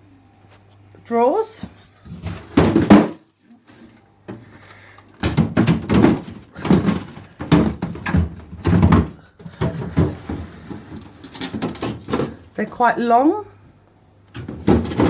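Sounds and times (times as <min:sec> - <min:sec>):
freezer drawer scraping thud: 0:02.1 - 0:03.2, 0:05.2 - 0:12.5, 0:14.4 - 0:15.0
plastic drawers sliding and knocking: 0:02.1 - 0:03.2, 0:05.2 - 0:12.8, 0:14.3 - 0:15.0.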